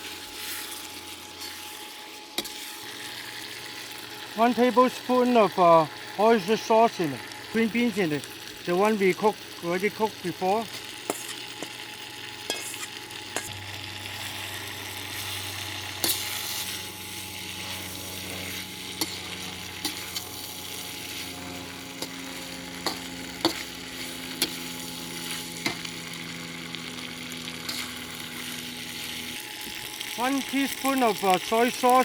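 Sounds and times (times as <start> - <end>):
spatula scraping a pan: 0.0 - 3.5, 10.7 - 13.5, 14.3 - 29.8
food sizzling in a pan: 0.0 - 32.0
low steady hum: 2.4 - 30.5.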